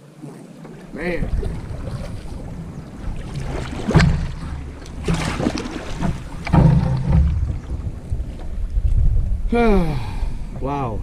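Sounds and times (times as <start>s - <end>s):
paddle strokes splashing water: 0.0s - 9.2s
wind rumbling on microphone: 0.0s - 11.0s.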